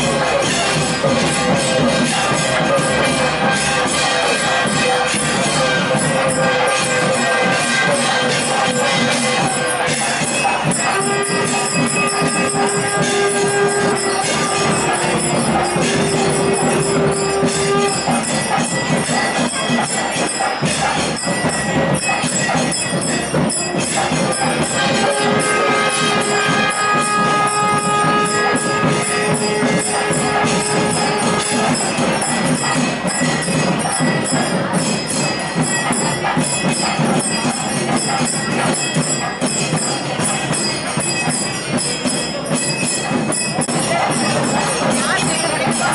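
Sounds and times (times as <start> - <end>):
dense percussion: 0.0 - 45.9
long held melody notes: 10.8 - 18.4.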